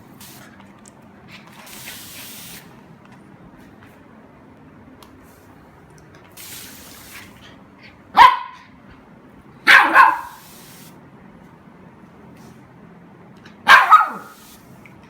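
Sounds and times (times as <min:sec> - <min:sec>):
spray hissing: 0:00.0 - 0:00.5, 0:01.6 - 0:02.8, 0:06.4 - 0:07.4, 0:10.1 - 0:11.0, 0:14.2 - 0:14.8
puppy barking: 0:08.1 - 0:08.7, 0:09.6 - 0:10.5, 0:13.6 - 0:14.4.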